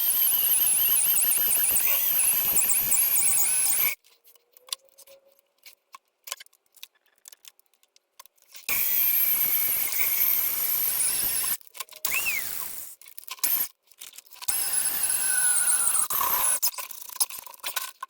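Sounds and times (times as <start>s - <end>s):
power drill boring holes: 0.0s - 4.0s, 8.7s - 13.7s, 14.5s - 16.7s.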